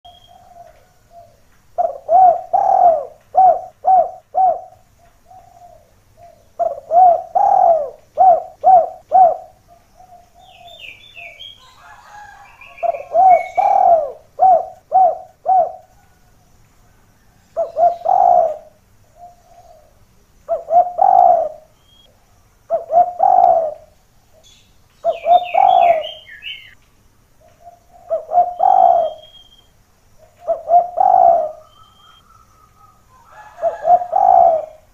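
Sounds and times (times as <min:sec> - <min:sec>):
small bird chirping: 0:00.0 - 0:16.5, 0:17.3 - 0:34.9
dove cooing: 0:00.1 - 0:16.4, 0:17.4 - 0:22.1, 0:22.7 - 0:24.4, 0:25.0 - 0:26.7, 0:27.4 - 0:29.5, 0:30.2 - 0:34.9.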